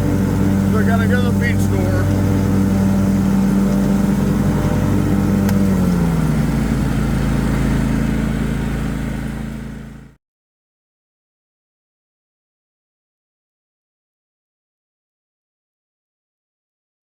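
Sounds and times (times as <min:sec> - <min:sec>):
lawn mower engine running: 0:00.0 - 0:10.2.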